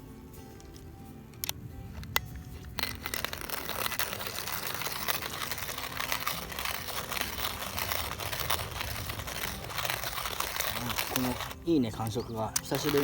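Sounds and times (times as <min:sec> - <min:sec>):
coffee mill crunching grind: 0:00.5 - 0:13.0
coffee mill clicks: 0:01.4 - 0:13.0.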